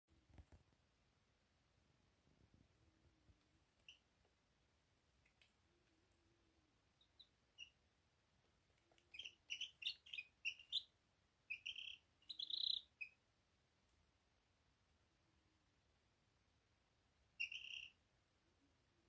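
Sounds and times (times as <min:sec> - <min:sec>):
small birds chirping: 0:03.8 - 0:04.1, 0:06.9 - 0:07.8, 0:08.7 - 0:13.2, 0:17.4 - 0:18.0.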